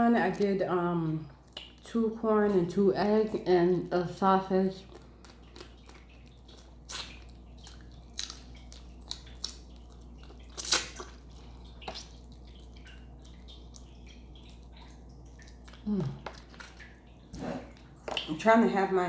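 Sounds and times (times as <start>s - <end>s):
wet chewing and lip-smacking: 1.3s - 2.0s, 4.8s - 18.3s.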